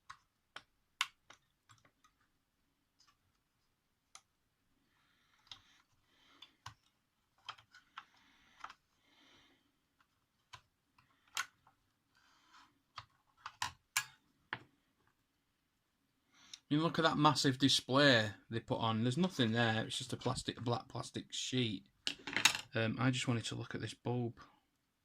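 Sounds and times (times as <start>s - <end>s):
plastic parts clicking and knocking: 0.0s - 4.4s, 5.3s - 8.9s, 9.9s - 11.9s, 12.5s - 15.2s, 22.0s - 22.8s.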